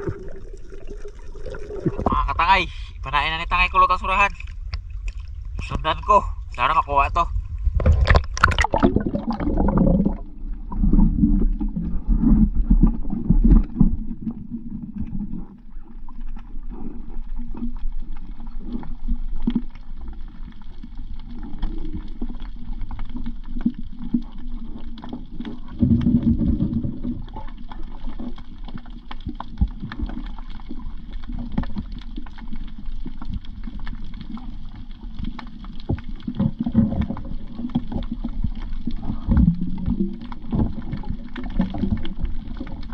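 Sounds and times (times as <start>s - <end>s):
muffled water gurgling: 0.0s - 42.9s.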